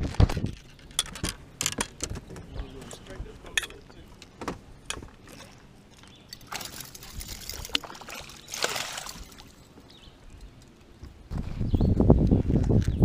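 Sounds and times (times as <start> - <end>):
water splashing and trickling: 5.2 - 10.8.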